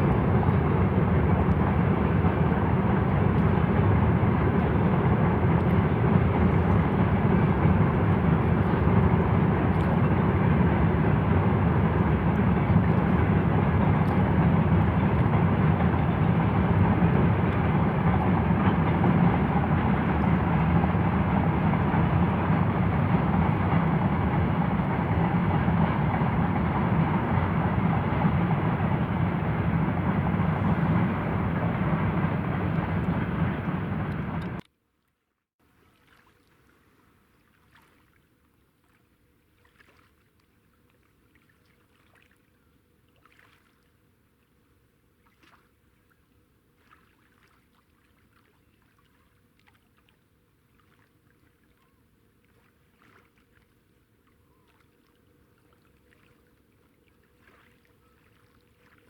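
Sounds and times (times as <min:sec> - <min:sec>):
freight train rumbling over bridge: 0:00.0 - 0:34.6.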